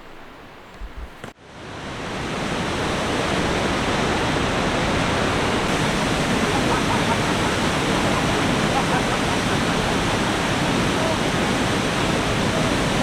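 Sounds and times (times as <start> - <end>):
low bumps: 0.0 - 1.4
waterfall rushing: 2.0 - 13.0.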